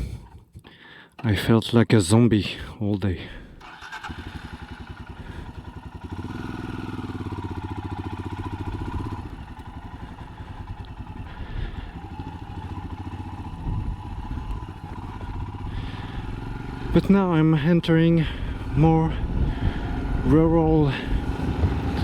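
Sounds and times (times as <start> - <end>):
motorcycle engine running: 3.6 - 22.0.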